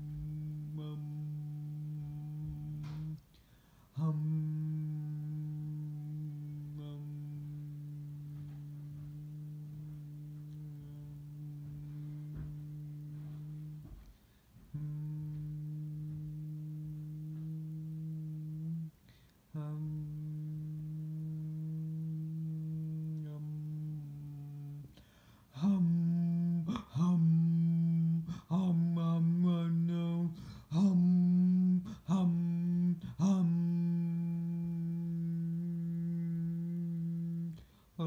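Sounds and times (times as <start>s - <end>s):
person humming: 0.0s - 38.0s
person breathing: 3.3s - 4.0s, 19.0s - 19.5s, 24.8s - 25.8s, 28.2s - 28.7s, 30.2s - 31.0s, 31.8s - 32.3s, 37.5s - 38.0s.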